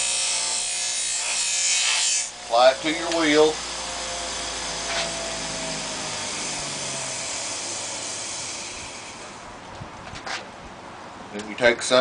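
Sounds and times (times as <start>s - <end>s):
sharpening machine whirring: 0.0s - 9.5s.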